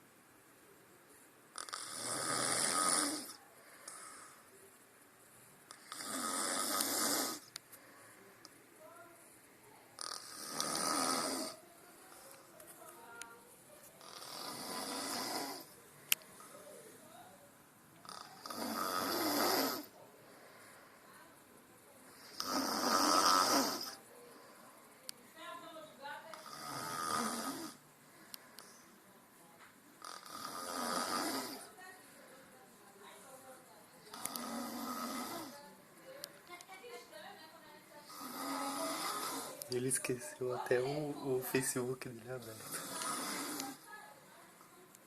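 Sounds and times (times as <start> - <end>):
quiet breathing: 0.0 - 45.0
man snoring: 1.6 - 3.4, 5.8 - 7.5, 10.0 - 11.6, 14.0 - 15.7, 18.1 - 19.9, 22.2 - 24.0, 26.4 - 27.8, 30.0 - 31.7, 34.1 - 35.6, 38.1 - 39.6, 42.4 - 43.8.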